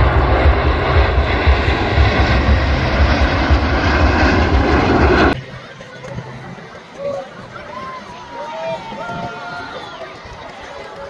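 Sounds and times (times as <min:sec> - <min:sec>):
aircraft engines flying past: 0:00.0 - 0:07.5.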